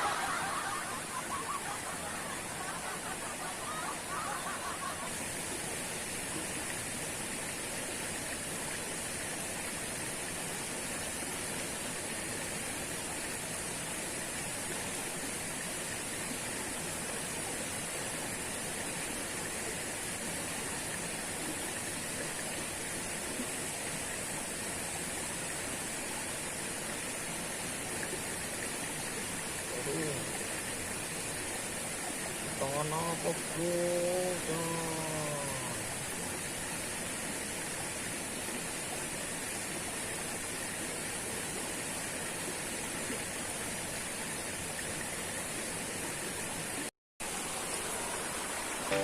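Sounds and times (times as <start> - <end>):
waterfall pouring: 0.0 - 12.1, 26.6 - 38.4.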